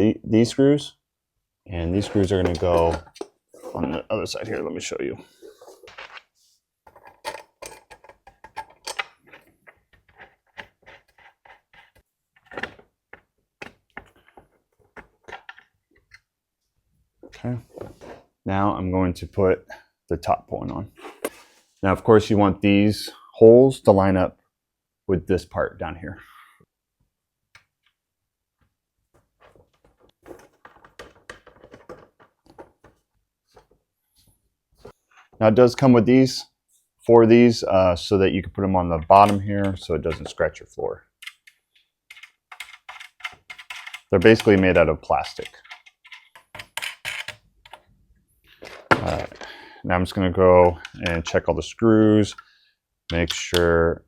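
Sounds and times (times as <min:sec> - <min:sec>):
clicks and knocks of parts: 0:06.9 - 0:16.2, 0:29.4 - 0:33.0, 0:41.2 - 0:47.9.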